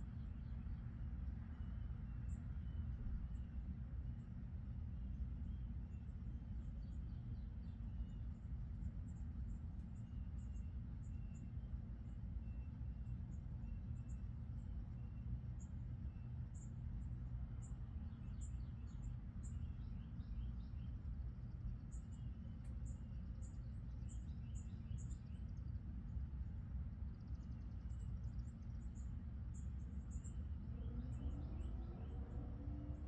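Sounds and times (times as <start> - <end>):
low rumble: 30.5 - 33.0.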